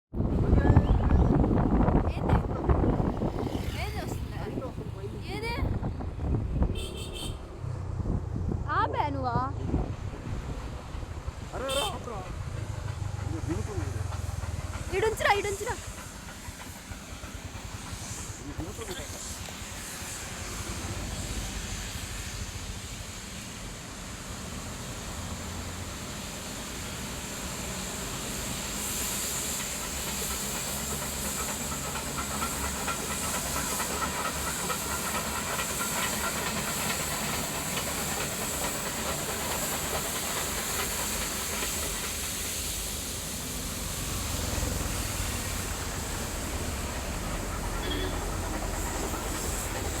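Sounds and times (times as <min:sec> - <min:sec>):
steam locomotive venting hiss: 0:01.4 - 0:08.0, 0:09.9 - 0:50.0
low rumble: 0:07.4 - 0:11.6.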